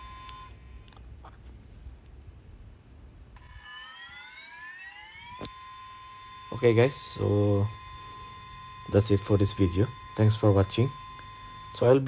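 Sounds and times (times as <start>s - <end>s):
electric motor whine: 0.0s - 0.5s, 3.4s - 12.0s
click: 0.2s - 1.0s.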